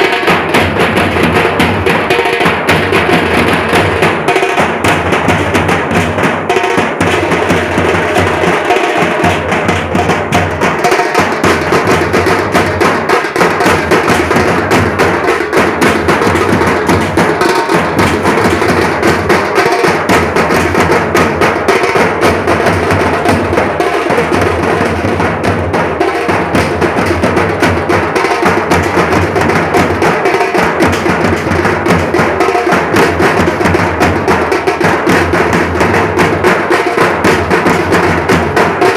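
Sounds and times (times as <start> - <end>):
large dhol drums beating: 0.0 - 38.9
small tasha drums beating: 0.0 - 38.9.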